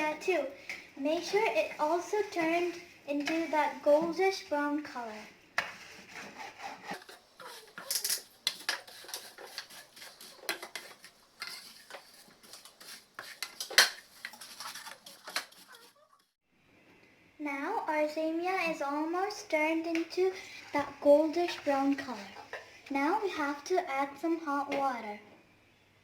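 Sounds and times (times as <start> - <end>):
spoon scraping and clinking a pan: 7.0 - 12.1.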